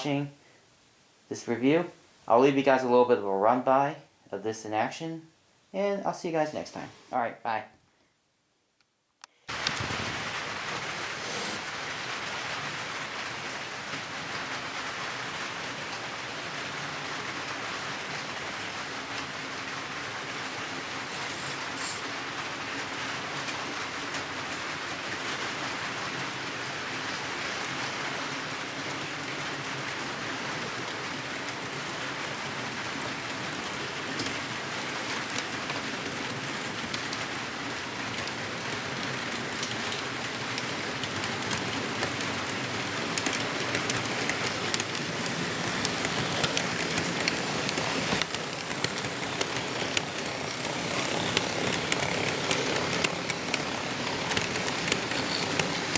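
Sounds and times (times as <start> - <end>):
model train rolling on track: 9.5 - 55.9
light clicks of wheels: 38.2 - 55.9.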